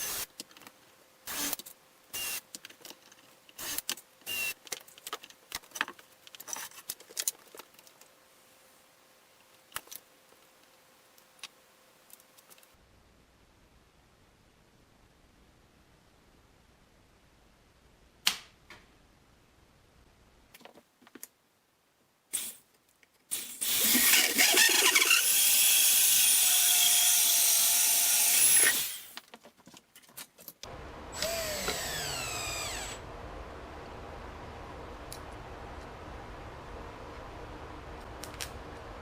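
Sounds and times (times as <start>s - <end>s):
quiet steady hum: 0.1s - 23.3s, 29.1s - 39.0s
power tool motor whining: 23.7s - 29.2s, 31.2s - 33.0s.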